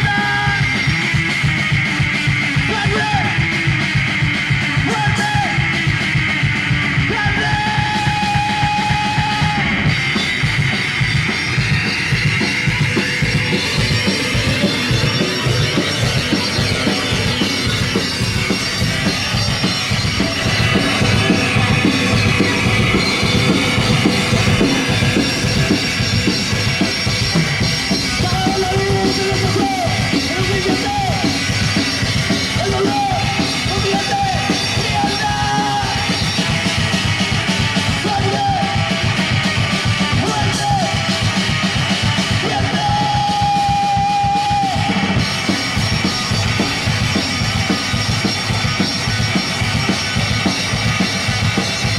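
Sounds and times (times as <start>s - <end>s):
drum kit beat: 0.0s - 51.9s
live rock band playing: 0.0s - 51.9s
lead melody line: 13.0s - 36.1s.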